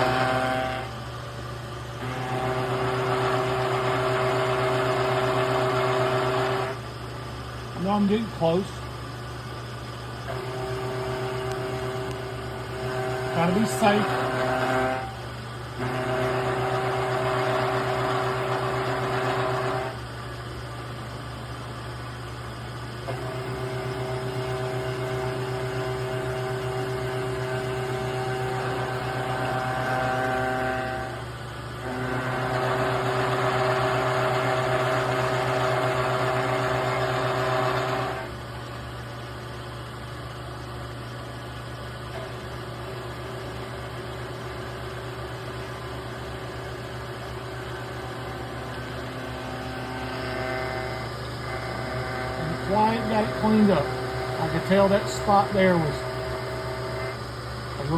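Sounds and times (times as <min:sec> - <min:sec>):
milling machine cutting aluminum: 0:00.0 - 0:01.0, 0:02.0 - 0:06.8, 0:10.3 - 0:20.0, 0:23.0 - 0:38.4, 0:45.2 - 0:57.9.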